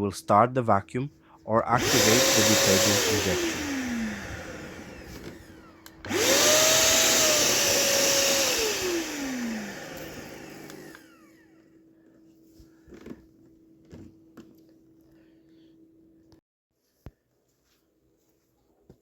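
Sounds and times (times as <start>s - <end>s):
shop vacuum motor whine: 1.7s - 12.2s.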